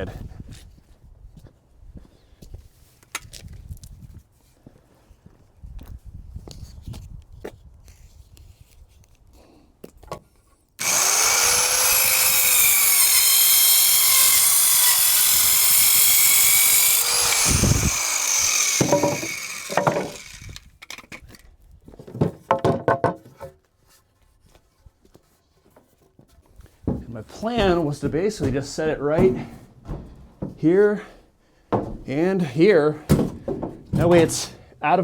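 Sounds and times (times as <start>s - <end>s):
electric power saw cutting wood: 10.8s - 20.7s.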